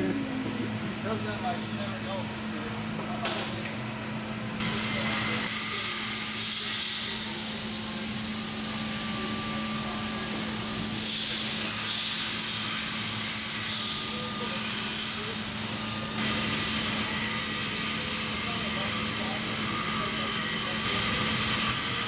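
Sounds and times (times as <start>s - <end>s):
cnc router hissing hum: 0.0s - 22.0s.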